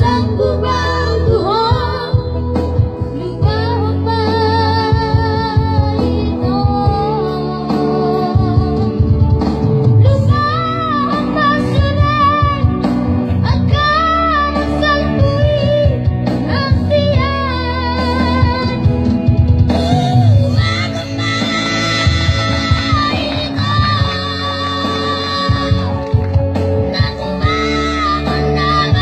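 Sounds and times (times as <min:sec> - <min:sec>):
instrumental backing music: 0:00.0 - 0:29.0
child singing: 0:10.1 - 0:12.7, 0:20.6 - 0:25.9, 0:26.9 - 0:29.0.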